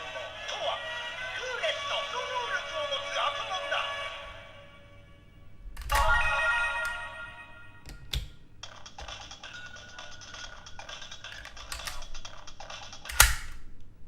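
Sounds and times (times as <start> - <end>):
rapid clicky electronic chatter: 8.6 - 13.6
sharp click: 10.8 - 13.7.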